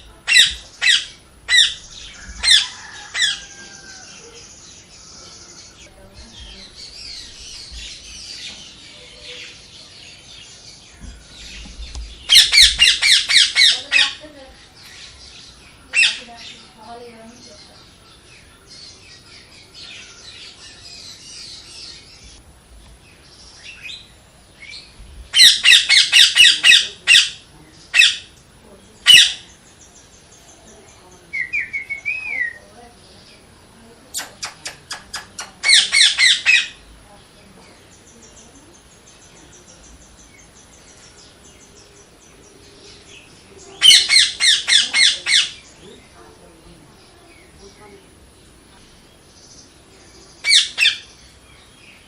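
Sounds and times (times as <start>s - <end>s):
parrot squawking: 0.3s - 1.8s, 12.3s - 14.2s, 25.4s - 27.4s, 34.2s - 36.8s, 43.8s - 45.6s, 50.4s - 51.0s.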